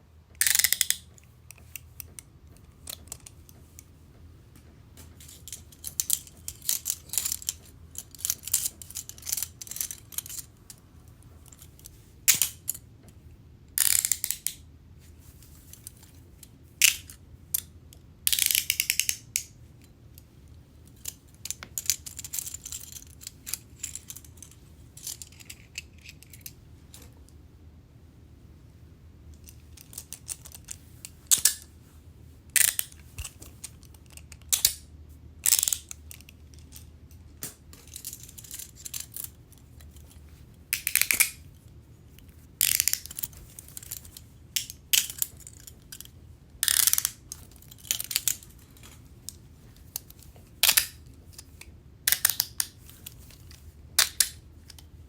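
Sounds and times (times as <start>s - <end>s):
handcuffs ratcheting clicks: 0.4s - 3.6s, 5.2s - 10.8s, 11.4s - 12.8s, 13.8s - 14.6s, 18.3s - 19.6s, 21.0s - 26.6s, 29.4s - 31.7s, 32.6s - 40.2s, 40.8s - 41.5s, 42.2s - 54.8s.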